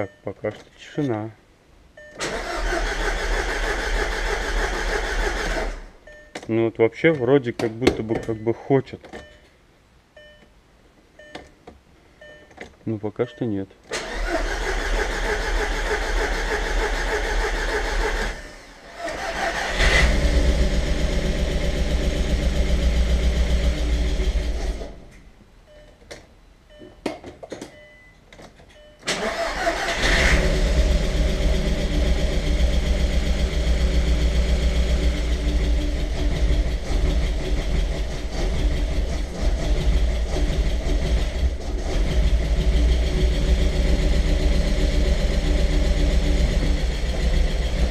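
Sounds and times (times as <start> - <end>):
engine cranking on starter: 2.2 - 5.9, 13.9 - 25.0, 29.1 - 47.9
engine running rough: 30.1 - 47.9.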